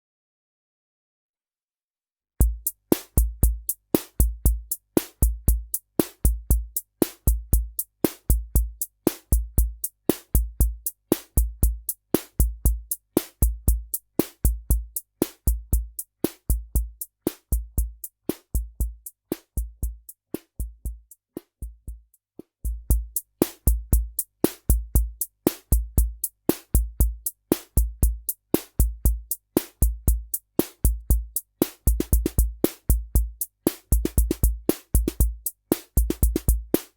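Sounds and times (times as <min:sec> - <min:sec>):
deep bass-drum thumps: 0:02.4 - 0:09.8, 0:11.4 - 0:20.0, 0:20.6 - 0:22.0, 0:22.7 - 0:27.2, 0:27.8 - 0:31.3, 0:36.0 - 0:36.7
drum machine beat: 0:02.4 - 0:36.9.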